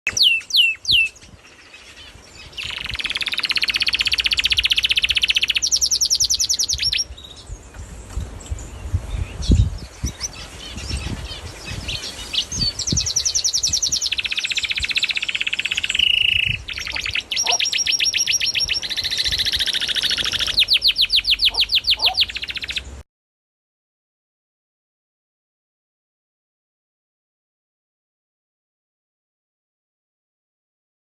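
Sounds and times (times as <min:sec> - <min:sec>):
small bird trilling: 0:00.1 - 0:07.1, 0:10.0 - 0:22.9.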